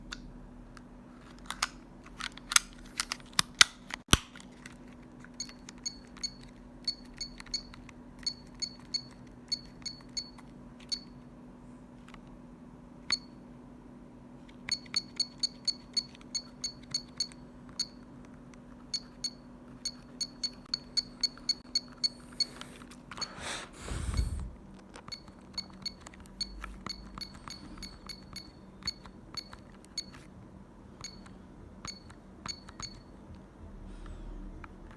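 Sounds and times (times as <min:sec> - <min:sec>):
steady low hum: 0:00.0 - 0:34.9
telephone keypad beeps: 0:05.4 - 0:11.2, 0:14.7 - 0:18.0, 0:18.9 - 0:22.6, 0:25.1 - 0:30.2, 0:31.0 - 0:33.1.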